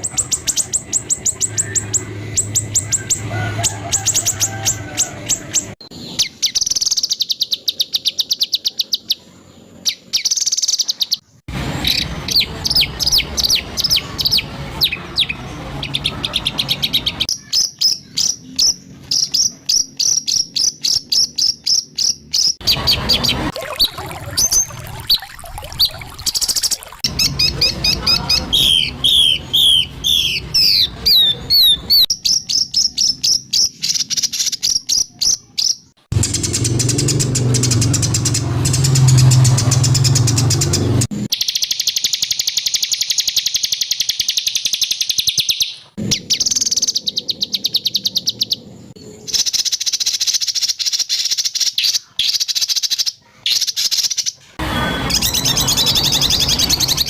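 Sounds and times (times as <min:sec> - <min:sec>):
songbird whistling and trilling: 0:11.8 - 0:48.6.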